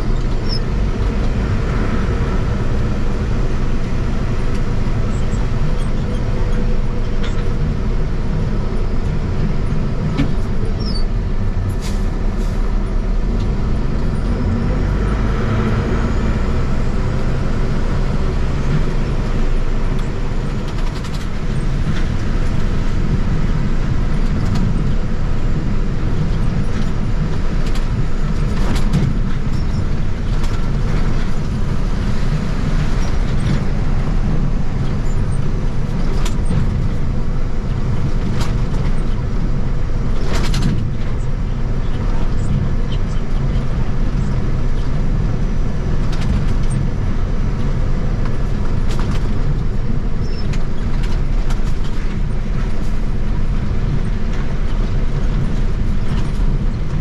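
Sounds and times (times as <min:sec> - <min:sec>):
truck engine and road rumble: 0:00.0 - 0:57.0.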